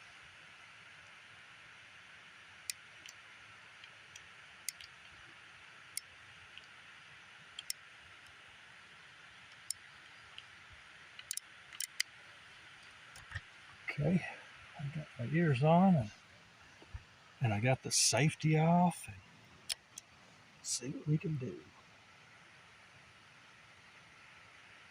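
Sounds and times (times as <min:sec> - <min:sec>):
faint steady hiss: 0:00.0 - 0:24.9
revolver loading clicks: 0:03.8 - 0:05.2, 0:07.6 - 0:07.8, 0:11.2 - 0:12.2.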